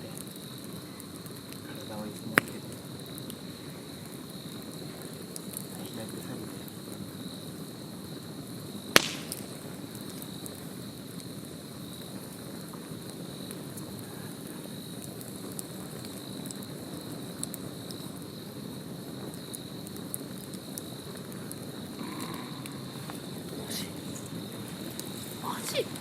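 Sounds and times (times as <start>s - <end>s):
campfire crackling: 0.0s - 26.0s
insects trilling: 0.0s - 26.0s
sharp loud crack: 9.0s - 9.6s.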